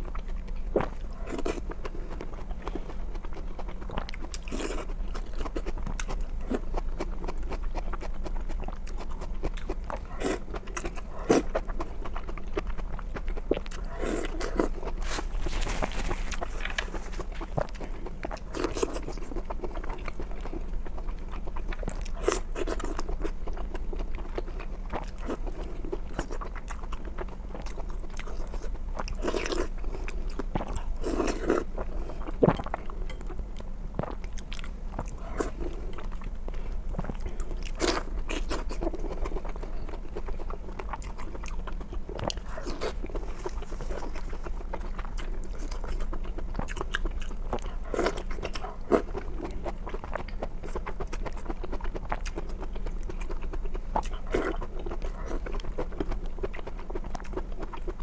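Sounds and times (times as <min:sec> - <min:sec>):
wet chewing: 0:00.0 - 0:58.0.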